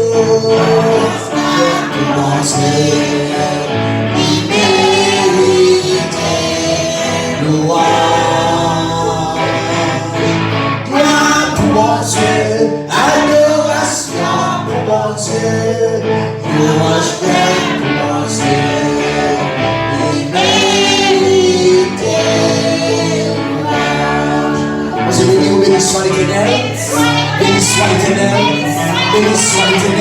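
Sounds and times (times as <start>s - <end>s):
gospel singing by several voices: 0.0s - 30.0s.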